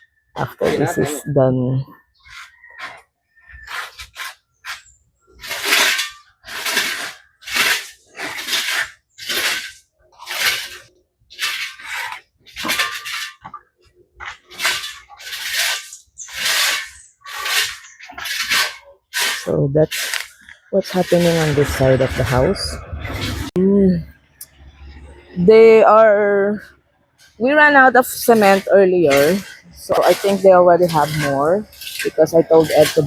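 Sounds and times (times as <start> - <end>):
hand tool scraping wet plaster: 2.2 - 22.6, 27.7 - 33.0.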